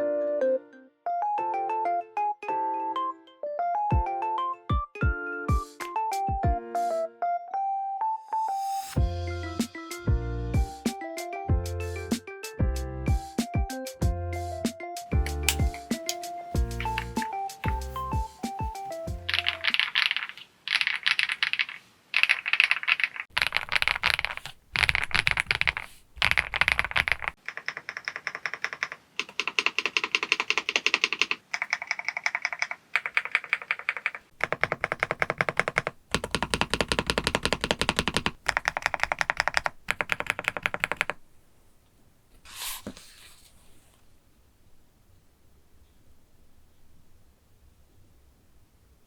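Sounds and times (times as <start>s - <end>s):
mechanical keyboard typing: 15.2s - 17.8s, 18.5s - 41.2s.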